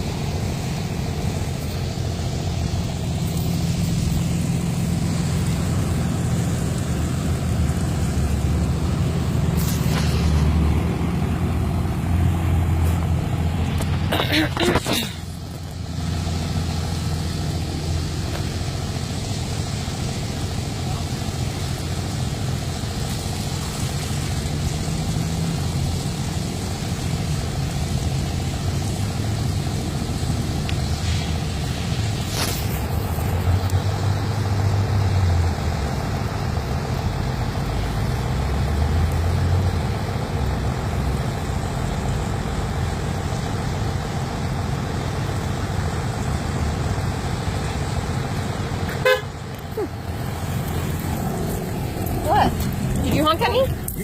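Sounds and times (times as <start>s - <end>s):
car engine rumbling: 0.0s - 54.0s
car horn honk: 48.9s - 49.4s.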